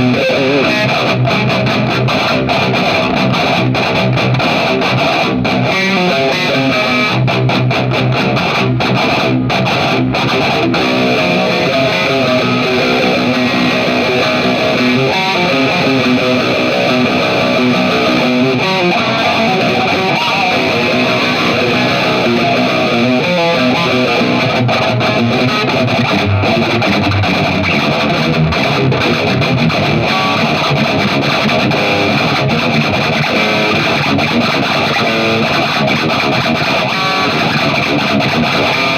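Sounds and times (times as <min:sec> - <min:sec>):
distorted electric guitar riffs: 0:00.0 - 0:38.9.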